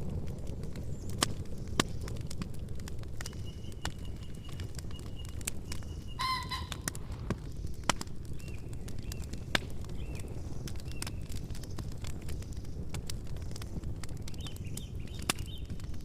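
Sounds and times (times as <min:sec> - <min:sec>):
campfire crackling and popping: 0:00.0 - 0:16.0
bird harsh pulsed call: 0:05.8 - 0:06.9.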